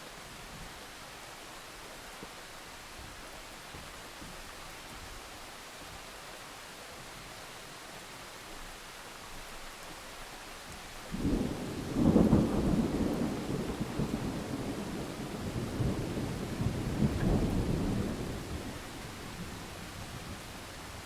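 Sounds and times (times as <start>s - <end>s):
steady rain: 0.0s - 21.0s
thunder rumbling: 11.1s - 21.0s.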